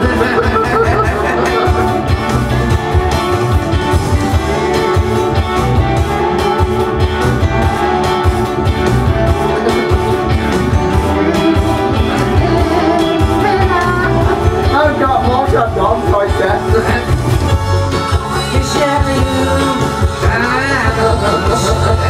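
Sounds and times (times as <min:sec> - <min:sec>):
music with guitar and drums: 0:00.0 - 0:22.0.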